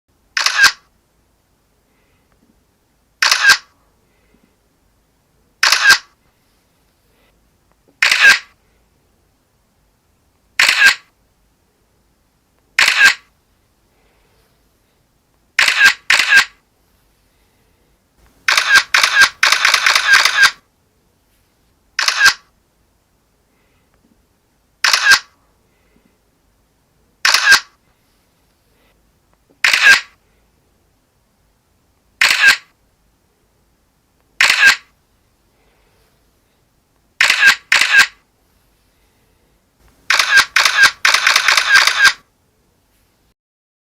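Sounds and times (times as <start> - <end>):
camera shutter clicking: 0.4 - 0.8, 3.2 - 3.7, 5.6 - 6.1, 8.0 - 8.5, 10.6 - 11.1, 12.8 - 13.3, 15.6 - 16.6, 18.4 - 20.6, 22.0 - 22.5, 24.8 - 25.3, 27.2 - 27.8, 29.6 - 30.1, 32.2 - 32.7, 34.4 - 34.9, 37.2 - 38.2, 40.1 - 42.2.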